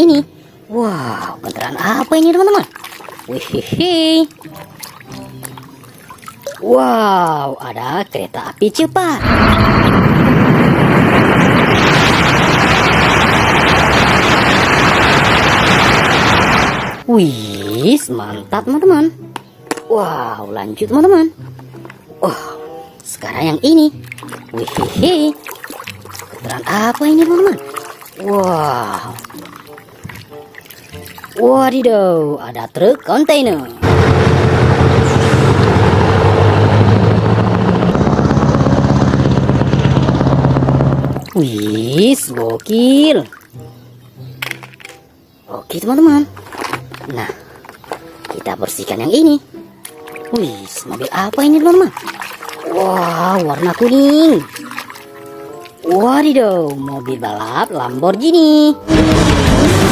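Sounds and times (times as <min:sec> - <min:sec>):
water running: 0:01.5 - 0:07.4, 0:23.5 - 0:33.8, 0:46.2 - 0:58.8
heavy truck engine running: 0:33.8 - 0:41.2.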